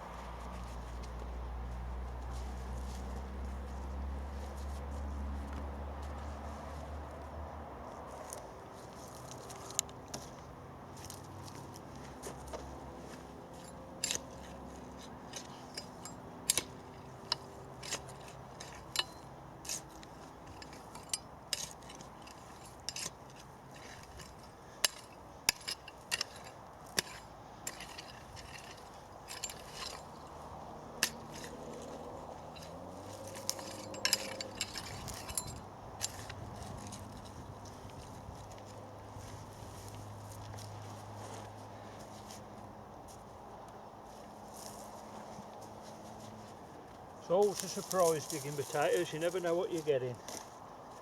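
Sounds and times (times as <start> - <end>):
digging fork scraping soil: 13.0 - 40.6, 47.2 - 50.4.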